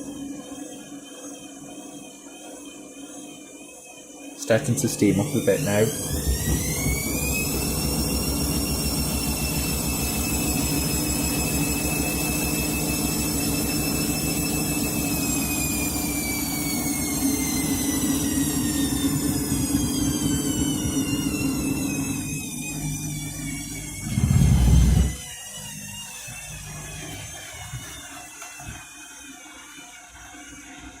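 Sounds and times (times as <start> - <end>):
washing machine spinning: 0.0 - 31.0.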